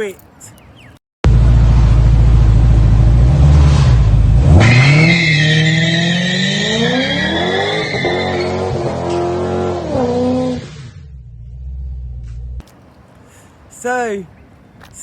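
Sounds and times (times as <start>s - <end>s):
car engine accelerating: 1.2s - 12.6s.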